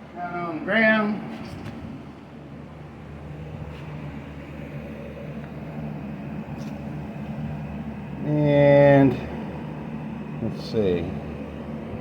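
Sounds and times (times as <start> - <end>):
low mechanical machine hum: 0.0 - 12.0.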